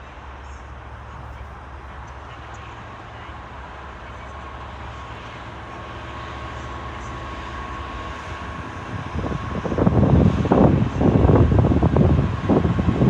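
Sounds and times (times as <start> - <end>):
diesel locomotive engine drone: 0.0 - 13.0
thin steady whine: 0.0 - 13.0
wind buffeting microphone: 7.2 - 13.0.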